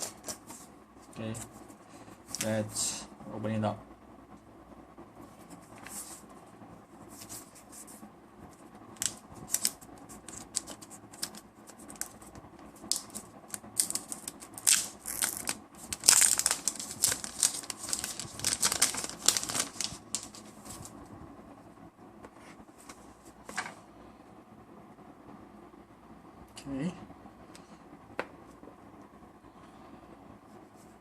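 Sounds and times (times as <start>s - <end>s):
plastic packaging crinkling and tearing: 9.0s - 20.9s.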